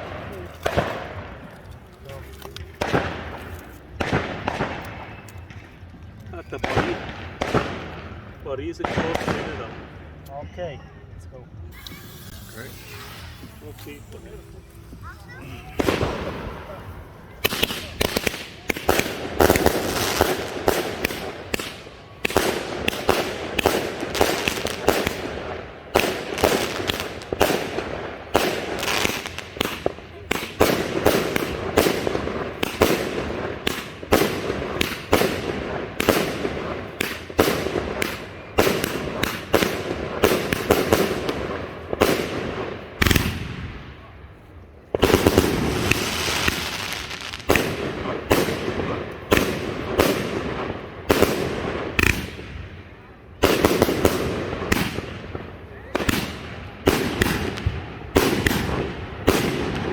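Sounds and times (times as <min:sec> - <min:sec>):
firework cake firing shots: 0:00.0 - 0:05.8, 0:06.4 - 0:10.2, 0:11.7 - 0:44.1, 0:44.9 - 0:59.9.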